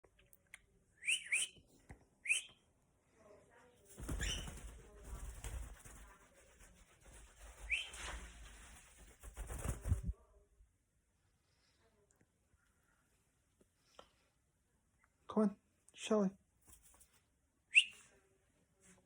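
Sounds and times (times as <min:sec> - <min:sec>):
cockatiel chirping: 0:01.0 - 0:01.6, 0:04.1 - 0:04.6, 0:07.6 - 0:08.0, 0:17.7 - 0:18.0
wings flapping: 0:03.9 - 0:10.2.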